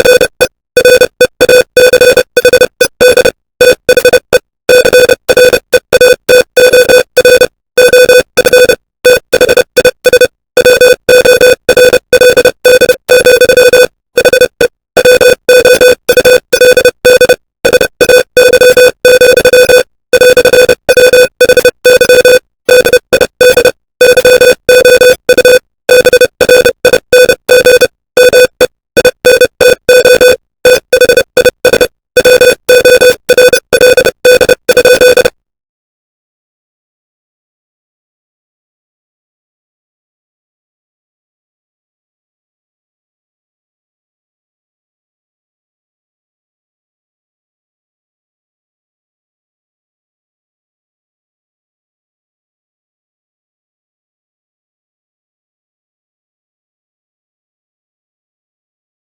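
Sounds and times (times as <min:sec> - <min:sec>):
morse code beeps: 0:00.0 - 0:35.4.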